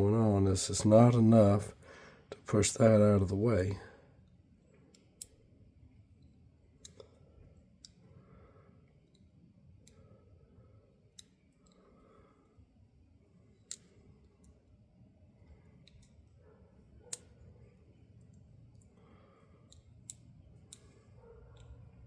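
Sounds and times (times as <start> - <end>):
faint ratchet clicks: 18.2 - 22.0.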